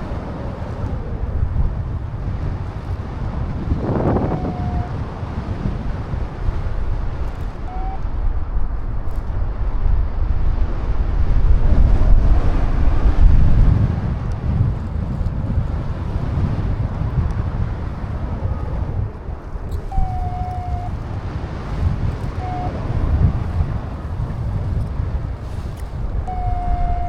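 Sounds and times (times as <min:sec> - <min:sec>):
wind buffeting microphone: 0:00.0 - 0:27.0
short steady tone: 0:26.3 - 0:27.0.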